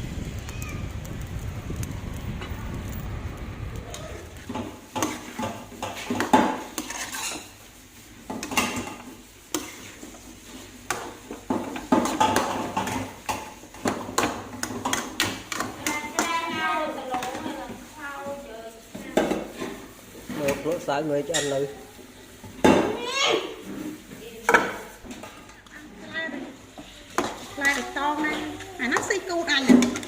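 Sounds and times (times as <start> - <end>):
low rumble: 0.0 - 4.6
dishes and cutlery clinking: 4.9 - 7.6, 20.4 - 21.7.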